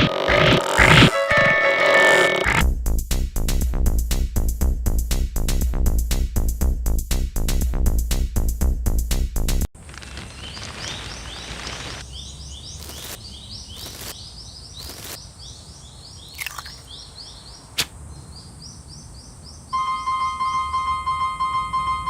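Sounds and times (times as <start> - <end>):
rapid high chirps: 12.7 - 14.2
sharp crack: 17.8 - 18.0.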